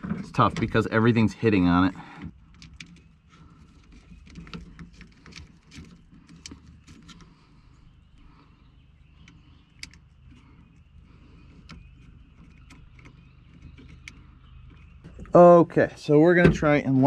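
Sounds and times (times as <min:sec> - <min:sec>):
light clicks and knocks: 0:09.2 - 0:15.4.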